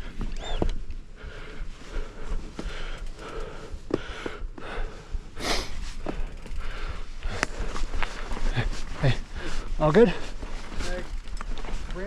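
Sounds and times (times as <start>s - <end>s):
person panting heavily: 1.1s - 10.4s.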